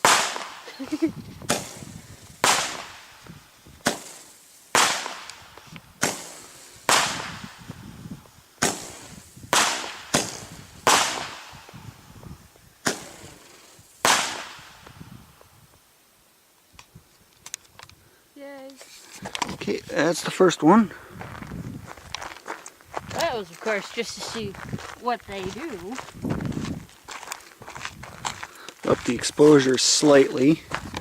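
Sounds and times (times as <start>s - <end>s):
roman candle bangs: 0.0s - 0.8s, 1.5s - 3.2s, 3.8s - 7.7s, 8.6s - 11.7s, 14.0s - 14.9s.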